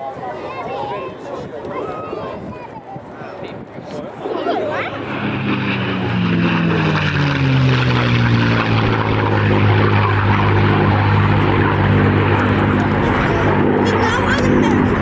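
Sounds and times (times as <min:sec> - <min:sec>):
propeller aircraft engine flypast: 0:04.1 - 0:15.0.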